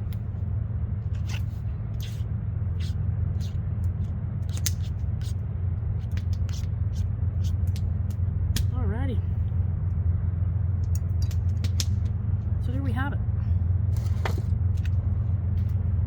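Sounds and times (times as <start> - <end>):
steady low rumble: 0.0 - 16.0
sharp clicks and light scrapes: 1.1 - 5.4, 6.0 - 8.7, 10.8 - 12.2.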